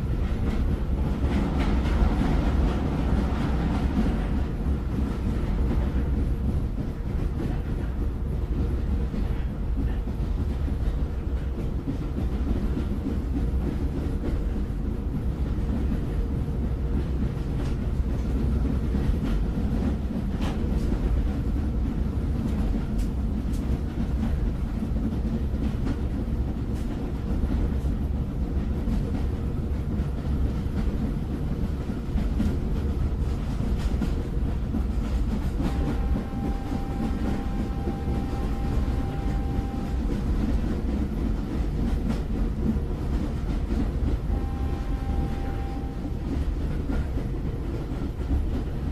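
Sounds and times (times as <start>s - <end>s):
train rumbling on rails: 0.0s - 48.9s
low hum: 35.6s - 40.4s.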